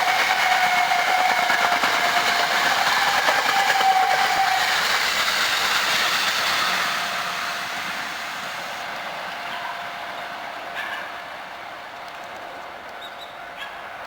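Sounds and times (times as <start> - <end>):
train wheels clattering over rails: 0.0 - 9.2.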